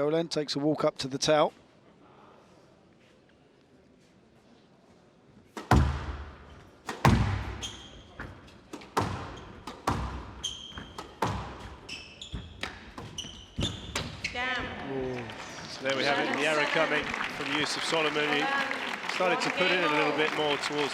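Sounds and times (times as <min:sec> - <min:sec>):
squash ball hits: 0:05.5 - 0:14.4
shoes squeaking on court: 0:05.5 - 0:14.8.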